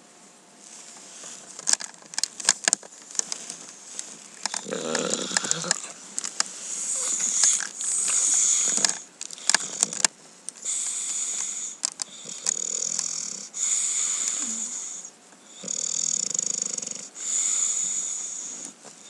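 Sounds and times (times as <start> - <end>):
dog snoring: 4.5 - 6.0, 6.6 - 18.8.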